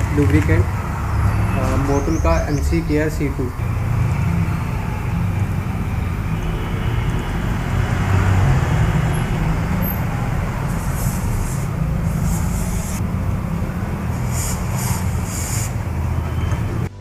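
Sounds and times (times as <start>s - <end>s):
low rumble: 3.0s - 14.2s
aerosol spray hissing: 10.2s - 13.0s, 14.0s - 16.2s.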